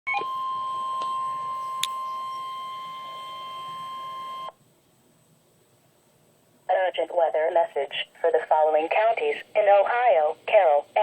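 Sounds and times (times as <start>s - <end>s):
steady alarm beep: 0.1s - 4.6s.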